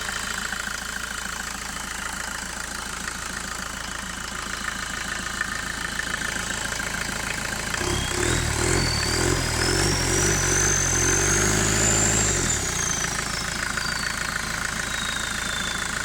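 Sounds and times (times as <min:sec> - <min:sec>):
diesel engine idling and revving: 0:00.0 - 0:16.0
turbocharger whistle: 0:07.8 - 0:16.0.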